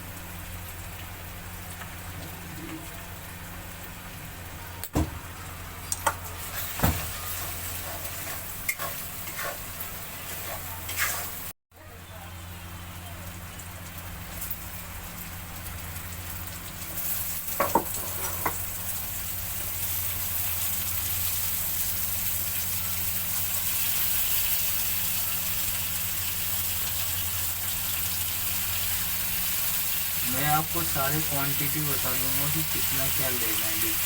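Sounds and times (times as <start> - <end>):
food sizzling in hot oil: 0.0 - 11.6, 12.9 - 34.0.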